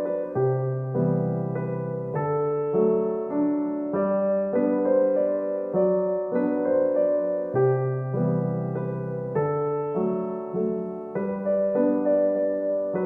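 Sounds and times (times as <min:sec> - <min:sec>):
soft piano music: 0:00.0 - 0:13.0.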